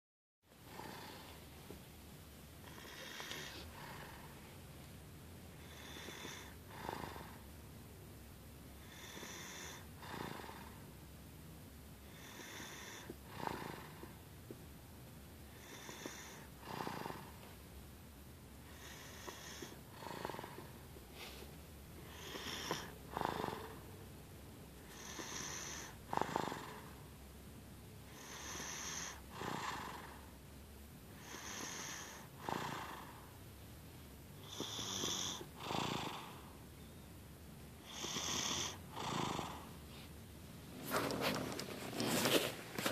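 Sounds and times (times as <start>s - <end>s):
baby snoring: 0.6s - 1.4s, 2.6s - 4.4s, 5.6s - 7.5s, 8.8s - 10.8s, 12.0s - 14.2s, 15.5s - 17.4s, 18.6s - 20.8s, 22.0s - 23.9s, 24.8s - 27.1s, 28.1s - 30.4s, 31.1s - 33.3s, 34.4s - 36.6s, 37.8s - 39.8s.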